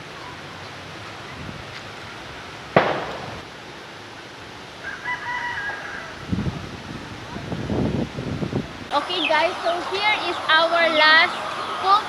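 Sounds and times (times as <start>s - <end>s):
rooster crowing: 4.8s - 8.8s.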